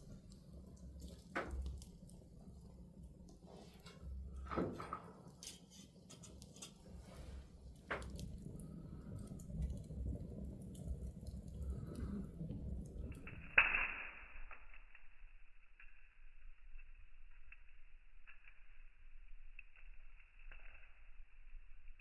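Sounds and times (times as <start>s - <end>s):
wood fire crackling: 0.0s - 22.0s
low steady rumble: 6.7s - 13.6s.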